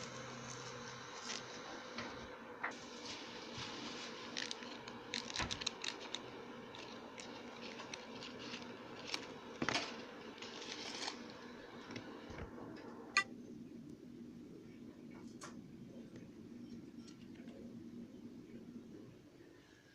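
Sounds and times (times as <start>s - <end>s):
foil wrapper crinkling and tearing: 2.9s - 11.6s.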